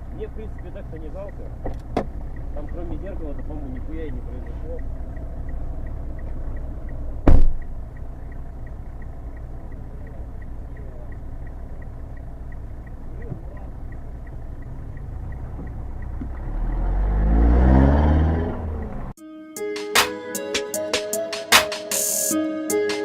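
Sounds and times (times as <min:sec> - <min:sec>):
car engine idling and revving: 0:00.0 - 0:19.2
loud thump: 0:07.2 - 0:07.6.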